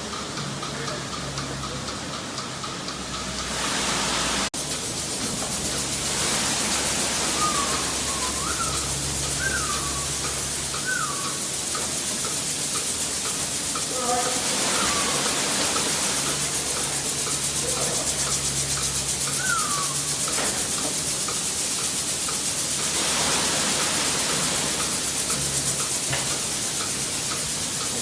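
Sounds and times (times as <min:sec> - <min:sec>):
milking machinery hiss and hum: 0:00.0 - 0:28.0
short rising and falling chirps: 0:06.0 - 0:11.7, 0:19.2 - 0:20.3.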